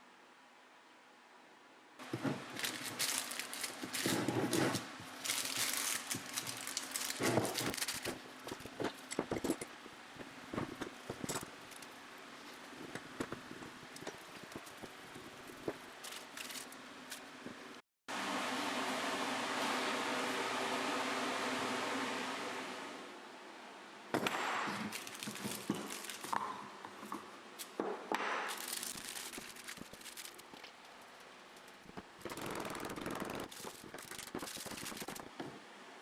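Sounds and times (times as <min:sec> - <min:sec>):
materials crinkling and clicking: 0:02.0 - 0:17.6, 0:24.2 - 0:26.4, 0:28.5 - 0:35.4.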